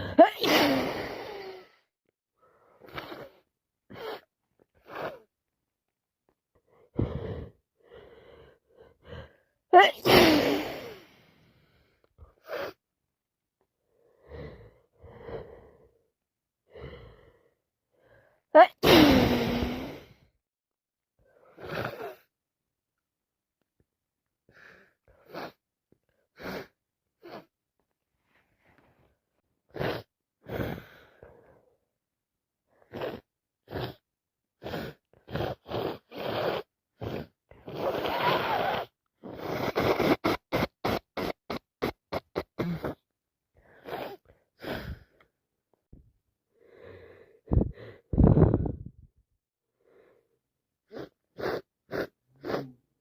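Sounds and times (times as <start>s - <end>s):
woman sneezing: 0.0s - 1.0s, 9.8s - 11.0s, 18.6s - 20.0s
woman sniffling and breathing noisily: 0.0s - 1.9s, 2.5s - 5.3s, 6.8s - 12.8s, 24.5s - 27.6s, 34.6s - 45.2s, 46.6s - 49.0s, 49.8s - 52.8s.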